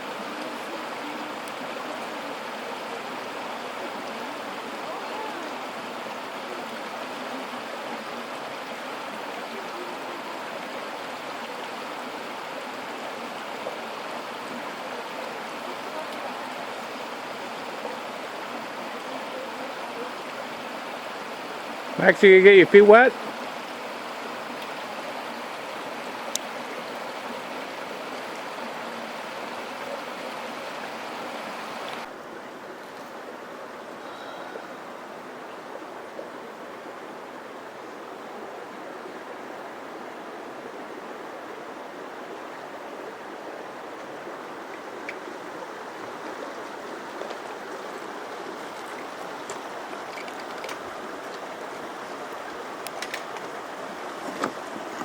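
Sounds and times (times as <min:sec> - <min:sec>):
creek flowing over rocks: 0:00.0 - 0:55.0.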